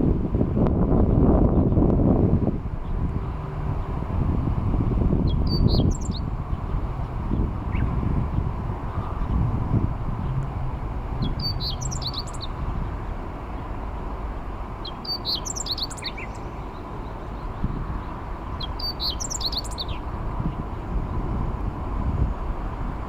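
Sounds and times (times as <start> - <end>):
steady low rumble: 0.0 - 23.0
bird singing high rapid phrases: 5.2 - 6.8, 11.2 - 12.9, 14.8 - 20.6.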